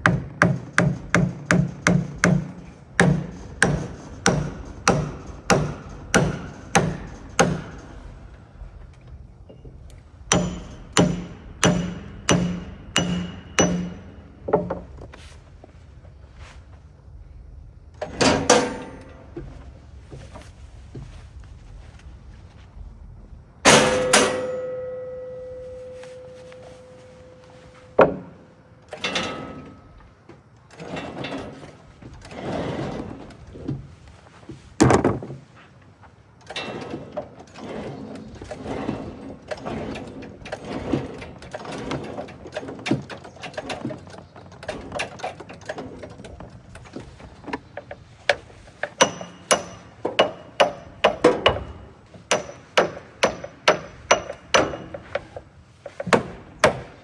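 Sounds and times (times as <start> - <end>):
knocks and clanks: 0.0 - 15.8, 17.9 - 35.7, 36.4 - 57.0
ringing metal strike: 10.3 - 14.4, 23.7 - 28.4.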